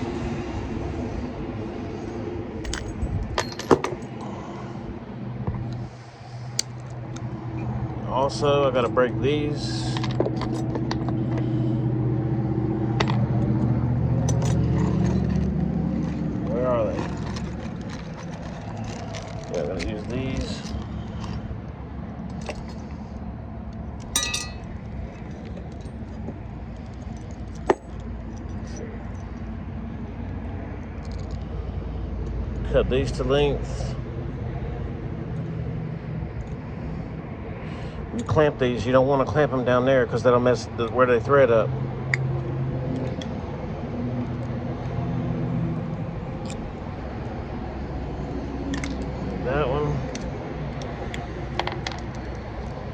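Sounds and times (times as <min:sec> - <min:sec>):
low mechanical hum and rumble: 0:00.0 - 0:52.9
metal clink: 0:02.7 - 0:04.2, 0:24.2 - 0:24.8.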